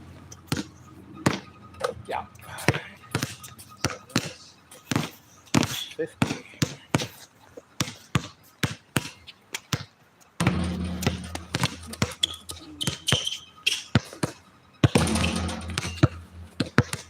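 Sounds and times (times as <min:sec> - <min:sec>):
basketball bouncing: 0:00.5 - 0:01.5, 0:02.7 - 0:06.8, 0:10.4 - 0:17.0
low steady rumble: 0:15.0 - 0:16.8.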